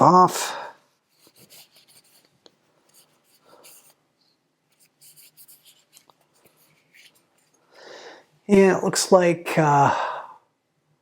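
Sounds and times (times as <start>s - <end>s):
cloth rubbing on knife: 1.0s - 4.0s, 4.7s - 7.6s.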